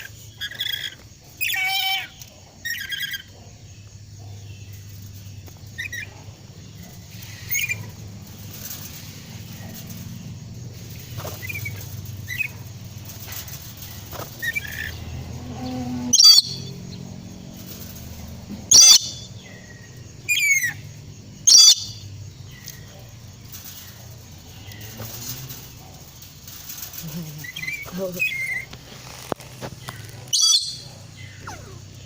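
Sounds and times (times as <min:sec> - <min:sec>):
parrot screeching: 0:00.5 - 0:03.1, 0:16.0 - 0:16.7, 0:18.7 - 0:19.2, 0:21.5 - 0:22.0, 0:30.3 - 0:30.8
parrot chirping softly: 0:05.4 - 0:17.0, 0:18.7 - 0:32.0.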